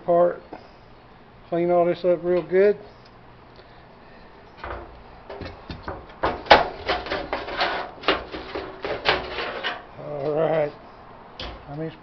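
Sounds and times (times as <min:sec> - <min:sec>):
metal parts clinking and scraping: 0:06.8 - 0:09.9.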